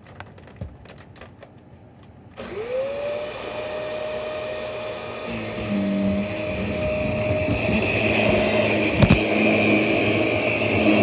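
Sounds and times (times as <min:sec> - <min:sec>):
vacuum cleaner motor whining: 0:02.4 - 0:11.0.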